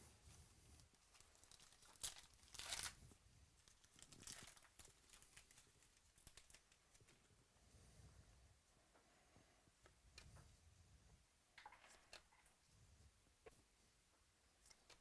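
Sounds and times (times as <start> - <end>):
foil wrapper crinkling: 0.9 - 3.0, 3.6 - 6.8
foil wrapper ripping: 1.1 - 3.0.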